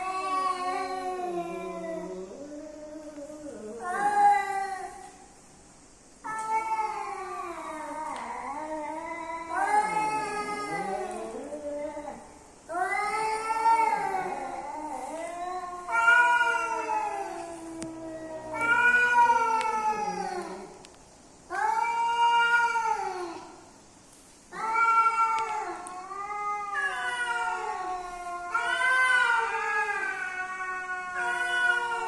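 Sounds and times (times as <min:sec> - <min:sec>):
cats caterwauling: 0:00.0 - 0:05.3, 0:06.2 - 0:20.9, 0:21.5 - 0:23.6, 0:24.5 - 0:32.0.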